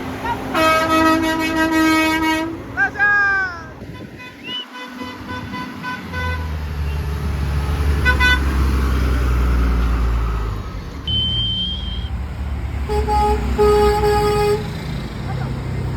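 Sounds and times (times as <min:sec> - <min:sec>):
heavy truck engine rumble: 0:00.0 - 0:15.9
truck horn blasts: 0:00.2 - 0:02.6, 0:03.8 - 0:06.6, 0:08.0 - 0:08.6, 0:12.8 - 0:14.8
high steady whistle: 0:11.0 - 0:12.2.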